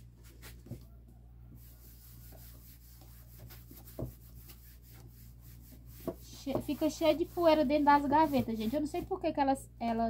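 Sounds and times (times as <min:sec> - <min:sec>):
cloth rubbing in a drawer: 0:01.6 - 0:09.2.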